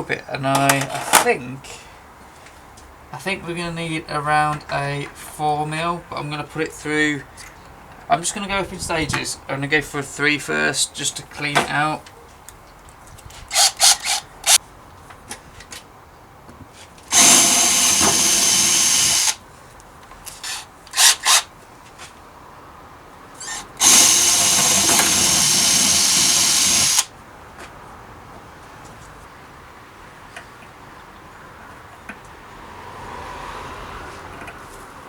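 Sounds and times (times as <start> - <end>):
power drill drilling: 13.5 - 14.6, 17.1 - 19.4, 20.4 - 21.5, 23.4 - 27.1.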